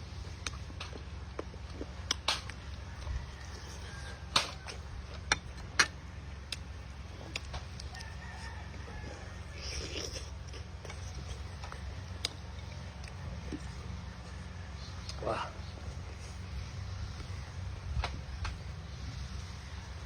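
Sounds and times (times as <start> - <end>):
steady low hum: 0.0 - 20.0
rooster crowing: 2.6 - 4.9, 7.8 - 10.1
crunching of biting crispy food: 6.4 - 13.8.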